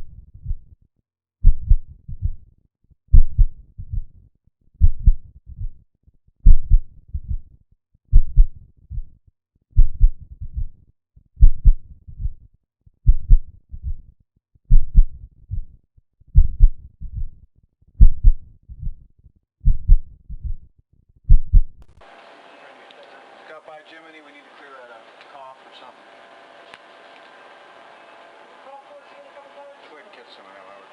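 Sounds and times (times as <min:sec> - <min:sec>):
heartbeat thumps: 0:01.4 - 0:02.4, 0:03.1 - 0:04.1, 0:04.8 - 0:05.8, 0:06.4 - 0:07.5, 0:08.1 - 0:09.1, 0:09.8 - 0:10.7, 0:11.4 - 0:12.4, 0:13.1 - 0:14.0, 0:14.7 - 0:15.7, 0:16.4 - 0:17.3, 0:18.0 - 0:19.0, 0:19.6 - 0:20.6, 0:21.3 - 0:21.8.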